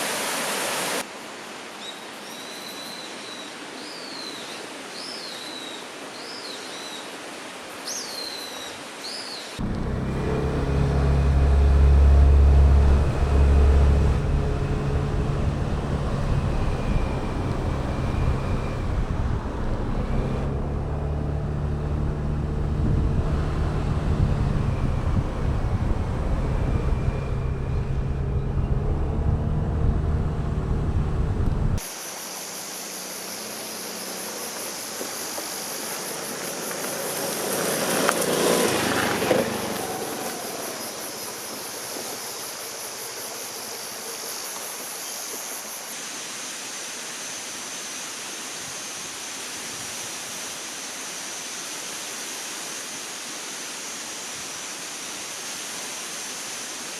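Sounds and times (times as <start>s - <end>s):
rushing stream: 0.0s - 56.9s
scooter engine running: 9.6s - 31.8s, 35.7s - 41.8s.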